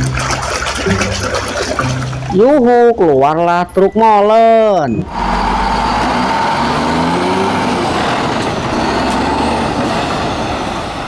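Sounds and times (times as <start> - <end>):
truck engine running: 4.9 - 11.0.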